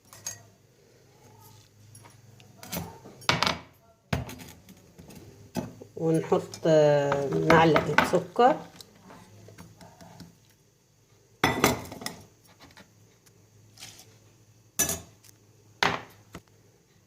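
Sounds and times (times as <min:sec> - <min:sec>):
metal spoon clinking against a cup: 0:00.0 - 0:00.5.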